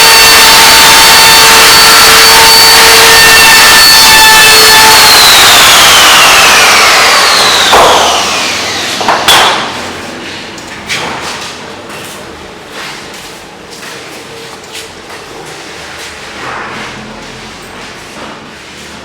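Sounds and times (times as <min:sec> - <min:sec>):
power tool motor spinning down: 0:00.1 - 0:09.0.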